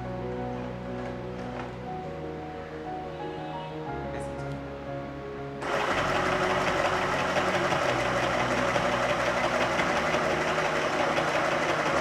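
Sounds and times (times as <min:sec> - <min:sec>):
sewing machine running: 0:05.6 - 0:12.0.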